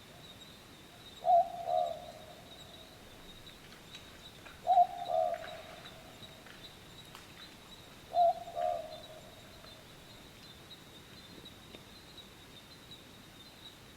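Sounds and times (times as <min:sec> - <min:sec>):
bird cooing call: 0:01.2 - 0:03.6, 0:04.6 - 0:06.8, 0:08.1 - 0:09.8.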